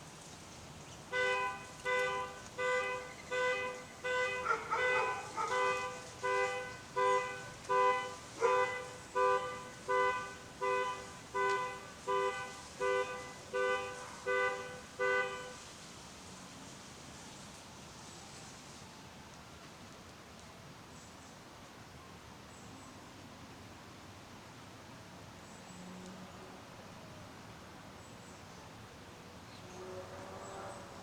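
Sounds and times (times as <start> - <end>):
car alarm horn honking: 1.1 - 15.6.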